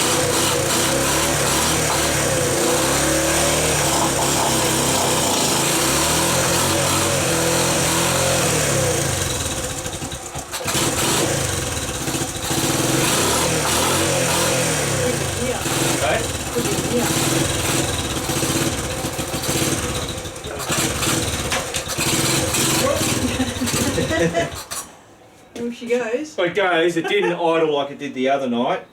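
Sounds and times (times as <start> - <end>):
small motorbike engine running unevenly: 0.0 - 24.9.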